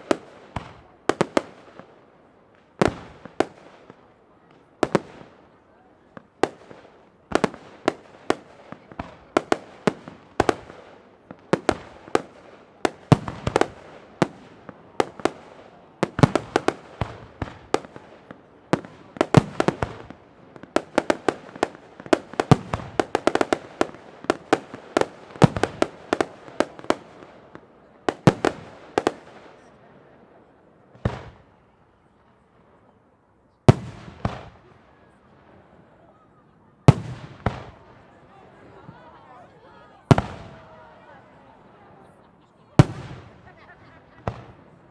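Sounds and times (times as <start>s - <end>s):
fireworks crackle: 6.2s - 29.8s.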